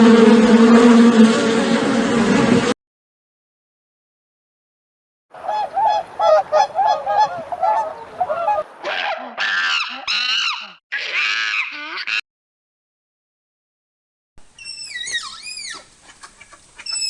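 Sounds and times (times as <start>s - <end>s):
high rising and falling calls: 5.4s - 8.7s, 14.6s - 15.9s.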